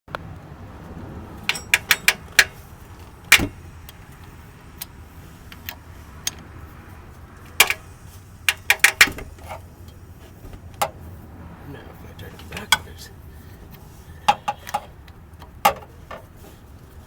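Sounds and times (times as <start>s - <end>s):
car engine idling: 0.2s - 17.0s
metallic engine ticking: 0.7s - 11.0s.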